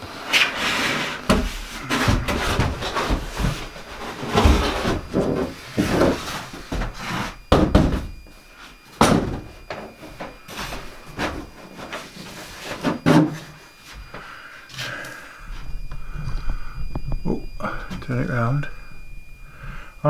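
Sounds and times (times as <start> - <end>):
wall panels bumping and scraping: 0.0 - 15.0
sharp knocks on panels: 4.3 - 8.3, 9.0 - 9.8.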